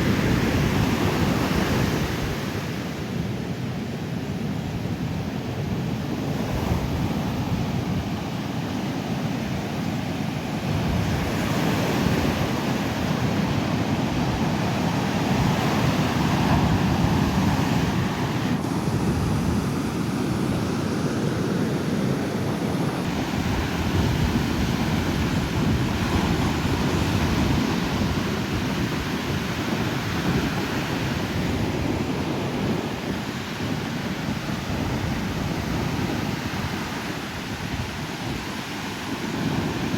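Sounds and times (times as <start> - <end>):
wind buffeting microphone: 0.0 - 3.6, 4.3 - 39.9
surf breaking on beach: 10.6 - 39.9.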